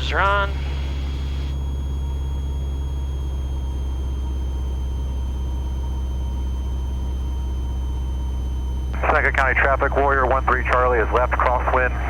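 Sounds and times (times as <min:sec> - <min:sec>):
aircraft engine and propeller droning: 0:00.0 - 0:12.0
faint high whine: 0:00.0 - 0:12.0.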